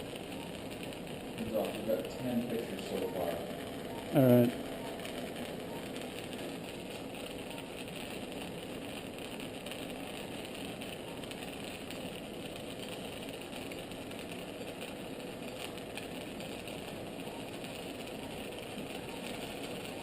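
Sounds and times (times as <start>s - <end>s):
equipment hum: 0.0s - 20.0s.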